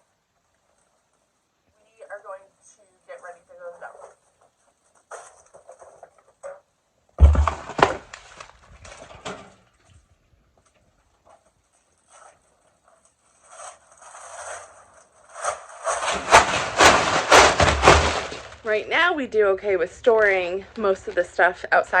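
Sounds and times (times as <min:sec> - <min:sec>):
rustling and scraping: 0:03.0 - 0:21.6
clattering knocks: 0:07.2 - 0:08.2, 0:15.9 - 0:18.6
heavy thump: 0:07.2 - 0:08.2, 0:15.9 - 0:18.6.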